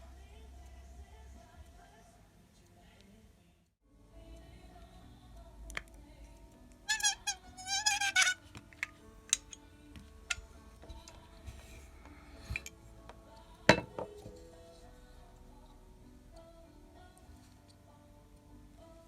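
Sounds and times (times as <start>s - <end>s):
high wavering squeak: 6.9s - 8.4s.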